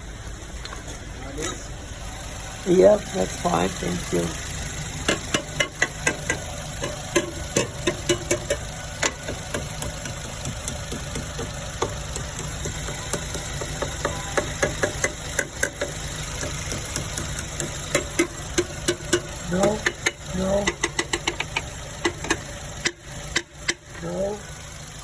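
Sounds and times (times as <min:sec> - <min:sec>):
car engine running with misfire: 0:00.0 - 0:25.0
sharp taps on engine computer: 0:05.0 - 0:23.9.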